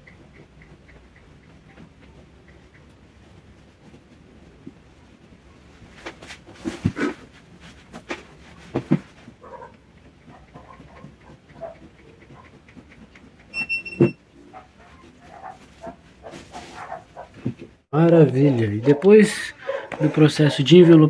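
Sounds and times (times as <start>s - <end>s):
short high-pitched squeak: 13.5s - 14.2s.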